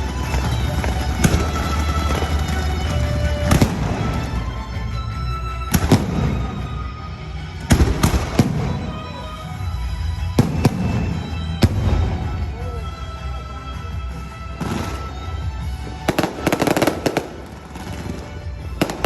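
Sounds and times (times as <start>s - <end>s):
fireworks bangs: 0.0s - 4.6s, 5.7s - 9.4s, 10.4s - 12.6s, 14.6s - 15.4s, 16.0s - 19.0s.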